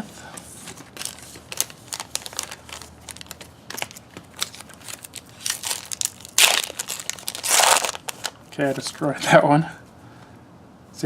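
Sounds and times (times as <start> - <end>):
plastic wrapper crinkling: 0.6 - 8.8.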